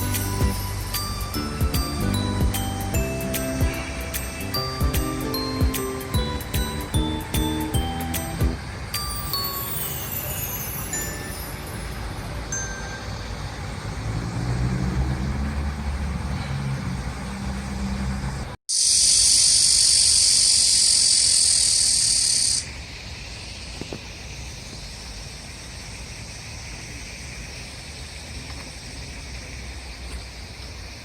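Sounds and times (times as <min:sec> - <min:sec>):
high-pitched insect chorus: 0:00.0 - 0:14.0, 0:18.7 - 0:31.0
faint hiss: 0:21.9 - 0:31.0.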